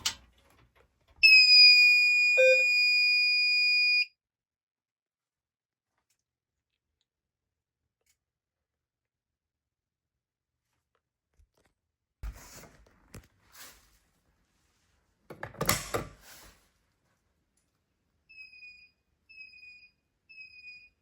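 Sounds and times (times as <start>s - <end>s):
fire alarm beeping: 1.2s - 4.1s, 18.3s - 21.0s.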